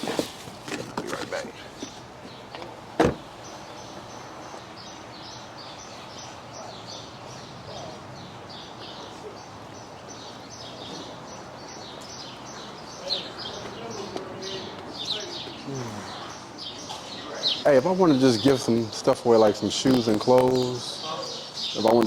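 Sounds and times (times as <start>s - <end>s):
birds chirping: 0.0s - 22.0s
steady outdoor hiss: 0.0s - 22.0s
loud thump: 3.0s - 3.4s.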